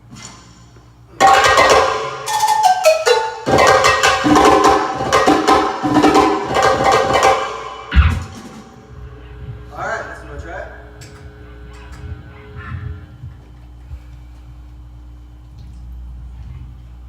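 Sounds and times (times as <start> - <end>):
percussion: 0.0 - 17.0
distorted electric guitar: 3.1 - 13.4.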